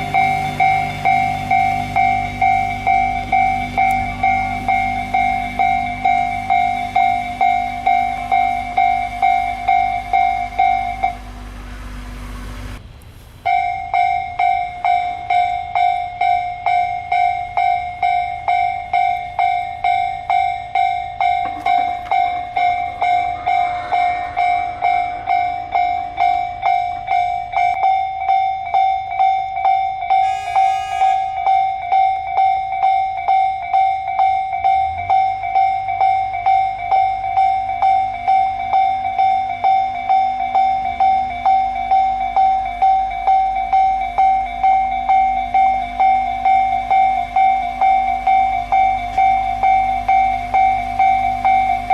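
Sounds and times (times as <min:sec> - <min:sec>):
level crossing warning bell: 0:00.0 - 0:12.0, 0:13.4 - 0:51.9
low rumble: 0:00.0 - 0:28.0.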